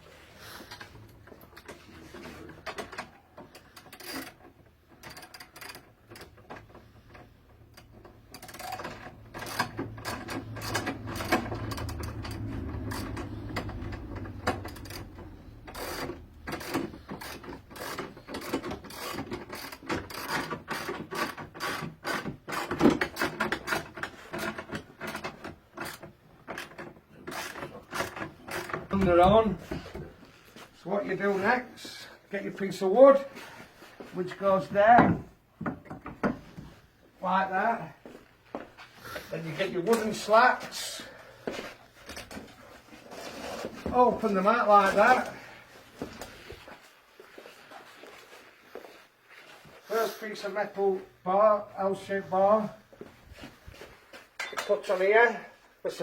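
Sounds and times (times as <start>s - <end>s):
metal parts clicking and rattling: 2.5s - 29.0s.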